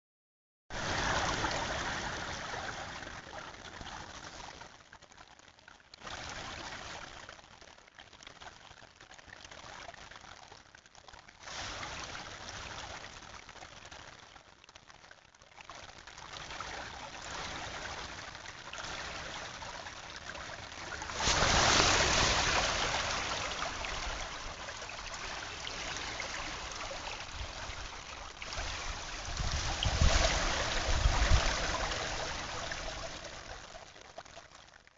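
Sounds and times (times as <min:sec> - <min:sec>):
creek water running: 0:00.7 - 0:05.1, 0:15.6 - 0:34.8.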